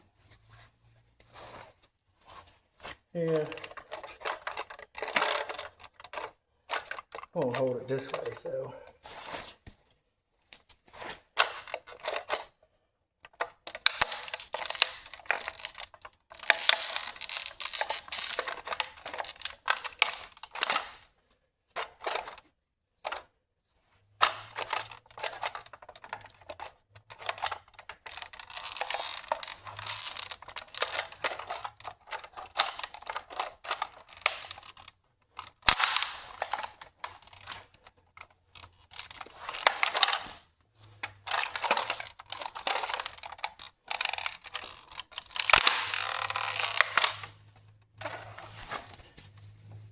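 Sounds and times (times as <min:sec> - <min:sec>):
plastic toy car cracking underfoot: 0:01.2 - 0:12.6, 0:13.2 - 0:49.9.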